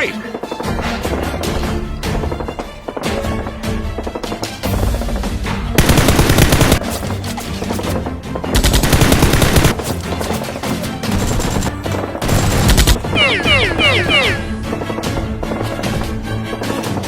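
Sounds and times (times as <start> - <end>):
background music: 0.0 - 17.0
automatic gunfire: 5.8 - 6.8, 8.6 - 9.8.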